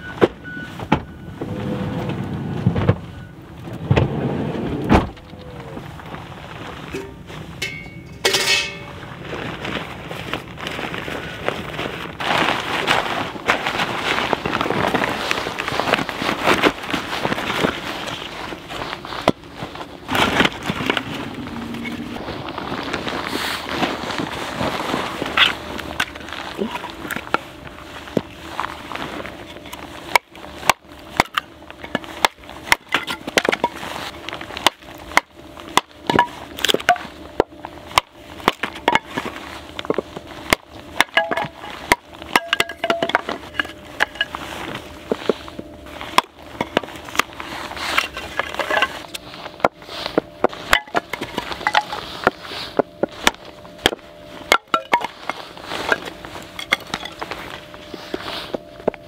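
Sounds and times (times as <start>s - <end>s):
wood fire crackling and popping: 8.7s - 57.8s.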